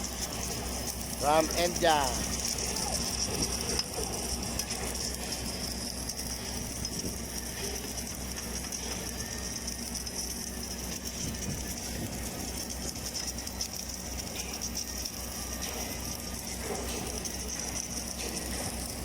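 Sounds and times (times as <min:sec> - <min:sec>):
constant low hum: 0:00.0 - 0:19.0
welding machine mechanical whir: 0:00.0 - 0:19.0.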